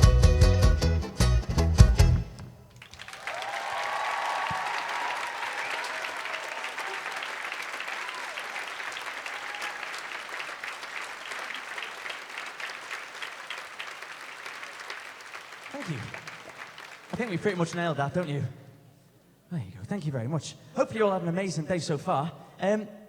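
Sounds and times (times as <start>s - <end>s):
audience applauding: 2.7s - 18.0s
audience cheering: 2.8s - 17.8s.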